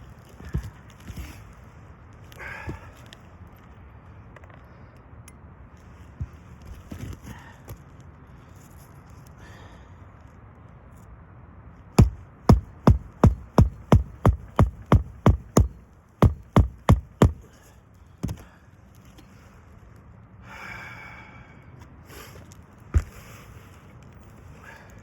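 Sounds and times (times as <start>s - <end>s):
hammer striking roofing nails: 12.0s - 17.5s, 18.2s - 18.4s.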